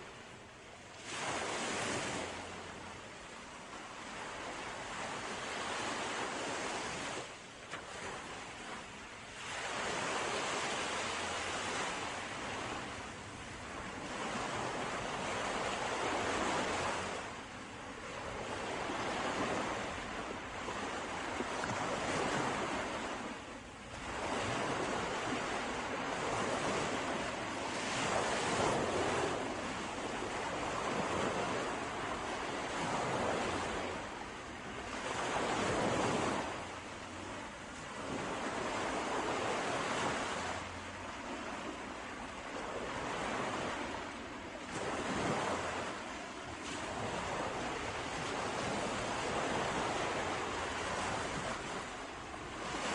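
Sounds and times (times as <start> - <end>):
sea waves washing ashore: 0.0 - 52.9.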